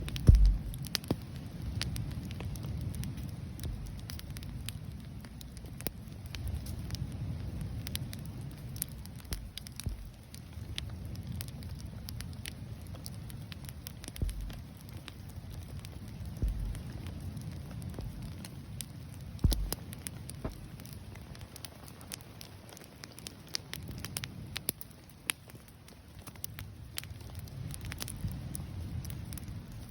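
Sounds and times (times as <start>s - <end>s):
low steady rumble: 0.0s - 21.4s
bonfire crackling and popping: 0.0s - 29.9s.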